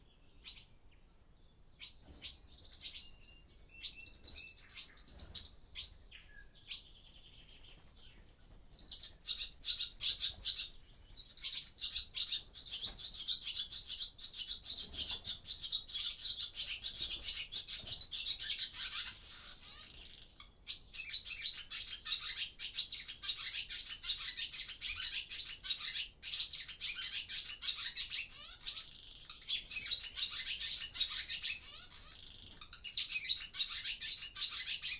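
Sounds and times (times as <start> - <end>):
swallows twittering: 1.7 - 34.9.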